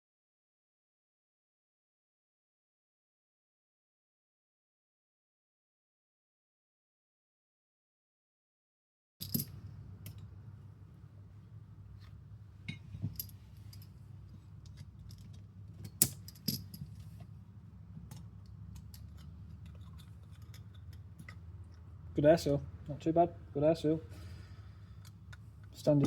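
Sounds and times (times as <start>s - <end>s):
steady low hum: 9.2s - 26.0s
gearbox parts clicking and clinking: 14.6s - 17.1s, 18.1s - 21.8s.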